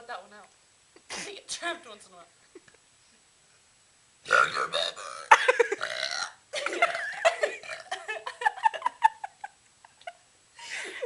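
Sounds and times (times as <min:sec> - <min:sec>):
person burping: 0:04.3 - 0:08.0.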